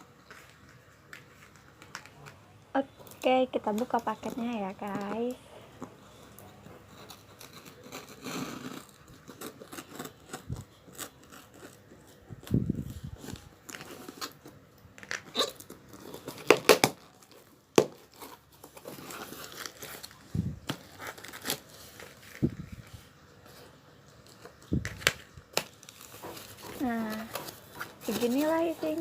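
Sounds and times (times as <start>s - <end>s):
plastic packaging tearing and crinkling: 0.0s - 29.0s.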